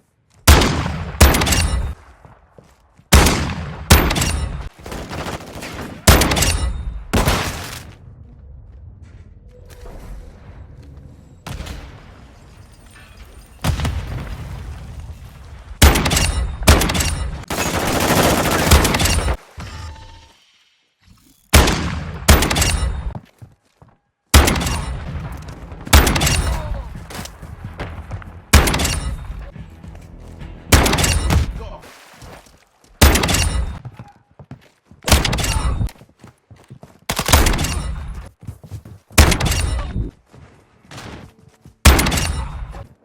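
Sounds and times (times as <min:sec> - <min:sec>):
shotgun shots: 0:00.5 - 0:02.0, 0:03.1 - 0:07.9, 0:21.6 - 0:23.2, 0:24.3 - 0:26.8, 0:30.7 - 0:31.6, 0:33.0 - 0:33.8, 0:39.2 - 0:39.9, 0:41.9 - 0:42.8.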